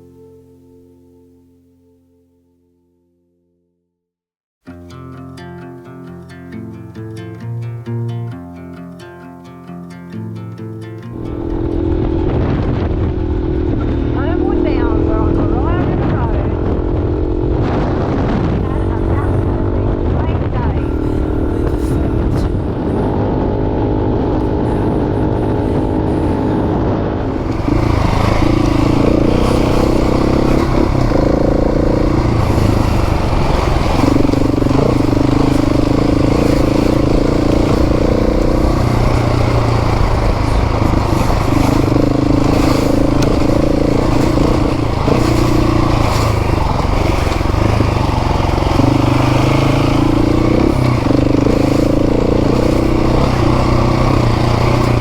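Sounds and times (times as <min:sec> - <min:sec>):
motorcycle engine running: 0:11.1 - 0:55.0
rushing noise: 0:11.2 - 0:55.0.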